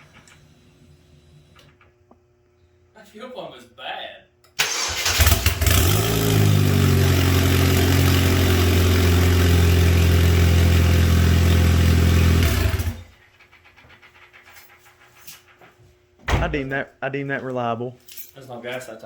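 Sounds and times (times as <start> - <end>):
car engine idling: 5.2 - 13.1.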